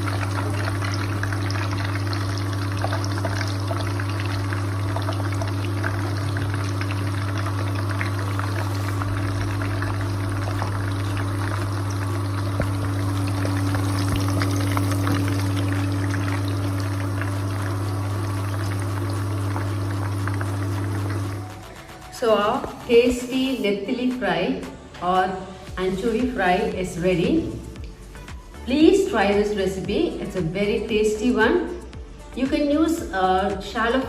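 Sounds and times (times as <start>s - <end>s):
fish sizzling in hot oil: 0.0s - 22.1s
low hum: 0.0s - 23.0s.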